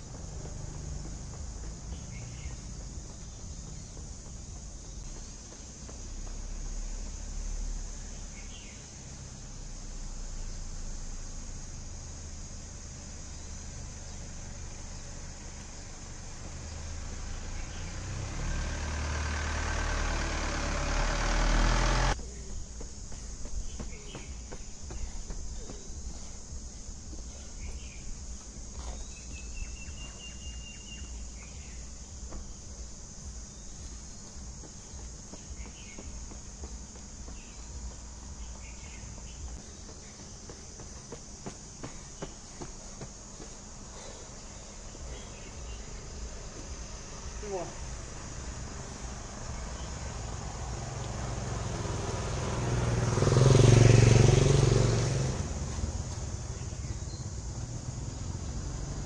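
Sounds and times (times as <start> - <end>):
vehicle driving past: 0.0 - 4.4, 13.5 - 22.2, 46.0 - 59.0.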